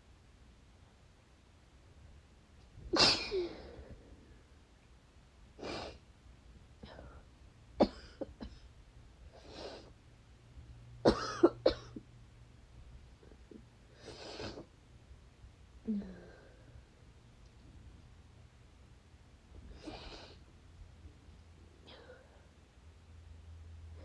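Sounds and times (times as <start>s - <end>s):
person sneezing: 2.9s - 3.9s
person coughing: 3.0s - 3.8s, 7.8s - 8.6s, 11.1s - 12.0s.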